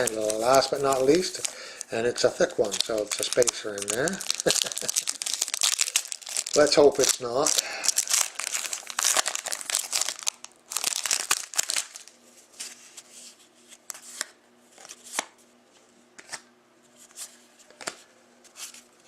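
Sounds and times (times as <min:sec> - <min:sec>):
card pack wrapper tearing: 0:00.0 - 0:12.1.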